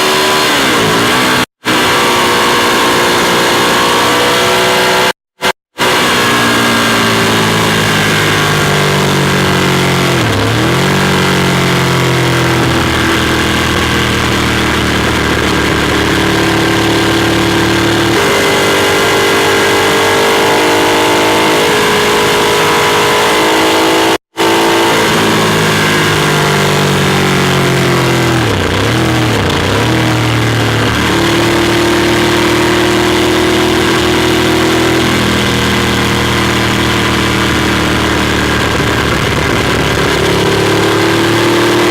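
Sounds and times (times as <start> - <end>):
motorcycle engine running: 0.0 - 41.9.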